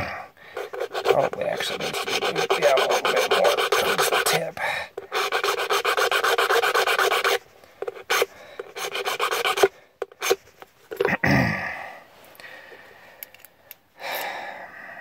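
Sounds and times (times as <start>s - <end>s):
hand file rasping on metal key: 0.6s - 10.4s.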